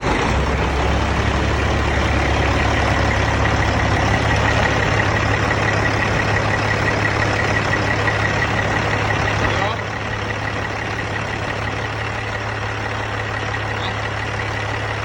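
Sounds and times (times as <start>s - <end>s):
diesel truck engine idling: 0.0s - 15.0s.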